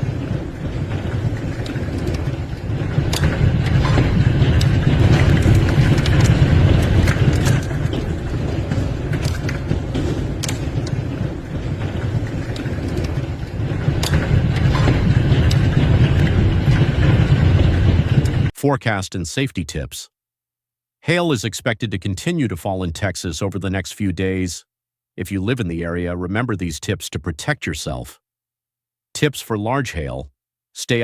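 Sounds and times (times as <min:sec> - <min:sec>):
hailstones striking hard surfaces: 0:00.0 - 0:18.5
storm roar: 0:00.0 - 0:18.6.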